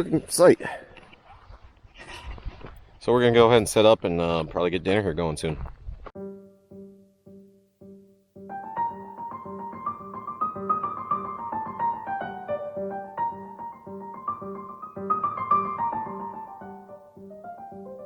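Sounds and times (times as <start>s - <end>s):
piano music: 6.2s - 18.0s.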